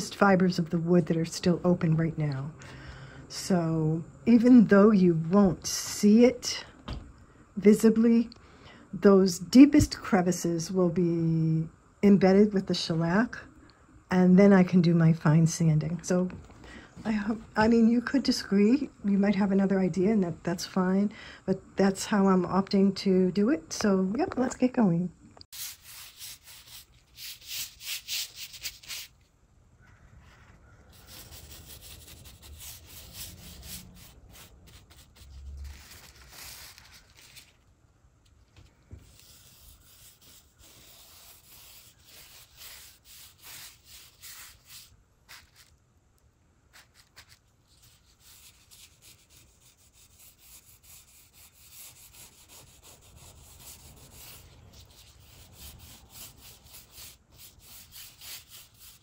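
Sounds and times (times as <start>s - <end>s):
sandpaper rubbing on wood: 25.5s - 29.1s, 30.9s - 37.5s, 39.0s - 45.7s, 46.8s - 59.0s.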